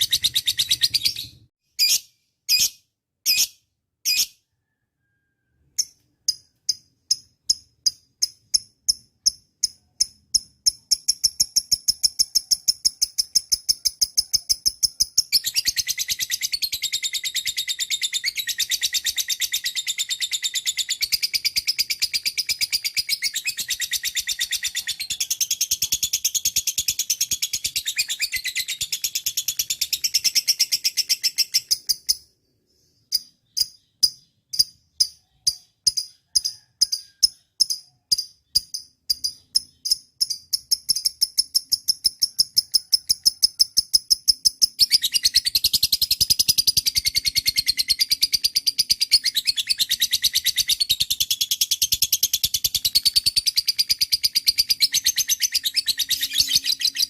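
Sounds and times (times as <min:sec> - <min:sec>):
bird chattering chirps: 0:05.8 - 0:57.0
bird trilling: 0:54.0 - 0:57.0.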